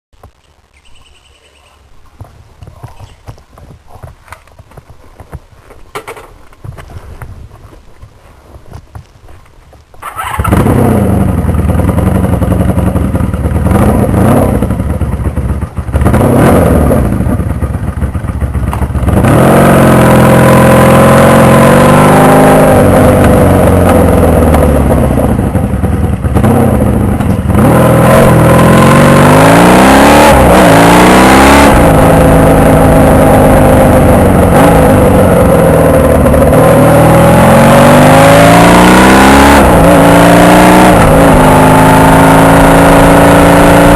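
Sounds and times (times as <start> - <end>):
motorcycle engine accelerating: 10.0 - 43.9.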